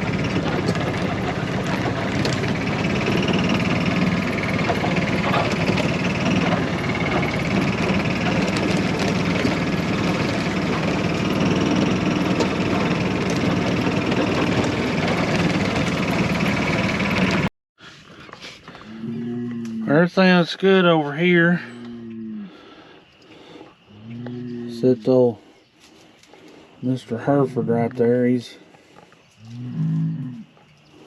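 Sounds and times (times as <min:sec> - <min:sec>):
golf cart engine running: 0:00.0 - 0:19.0.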